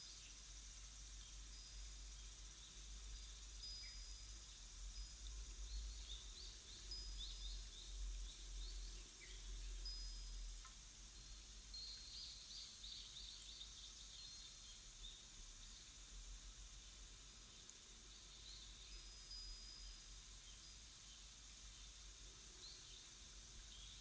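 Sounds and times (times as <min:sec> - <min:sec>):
thin whistled bird notes: 0:05.6 - 0:10.4.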